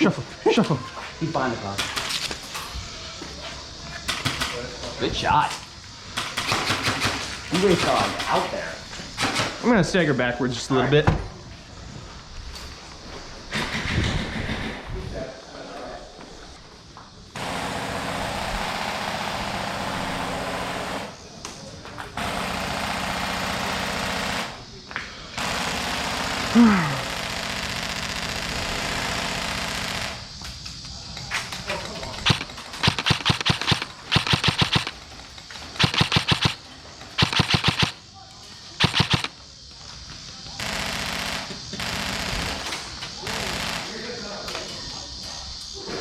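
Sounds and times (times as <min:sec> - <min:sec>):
airsoft gun rattling burst: 0:01.8 - 0:02.4, 0:06.2 - 0:08.4, 0:25.4 - 0:30.3, 0:31.4 - 0:38.0, 0:38.8 - 0:39.4, 0:40.6 - 0:44.0
airsoft rifle firing bursts: 0:32.2 - 0:35.0, 0:35.7 - 0:36.6, 0:37.2 - 0:38.0, 0:38.8 - 0:39.4, 0:40.6 - 0:42.7.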